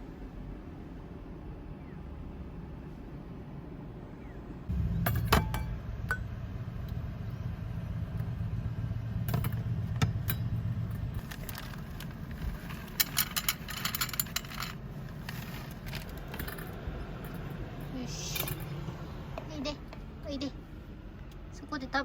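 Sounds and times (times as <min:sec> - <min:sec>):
low steady hum: 0:00.0 - 0:22.0
small hard objects clinking: 0:11.0 - 0:16.7.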